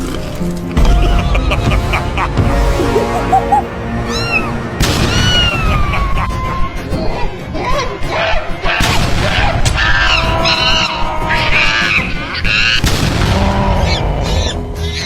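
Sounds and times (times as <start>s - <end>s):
background music: 0.0s - 15.0s
high wavering cries: 3.0s - 4.5s.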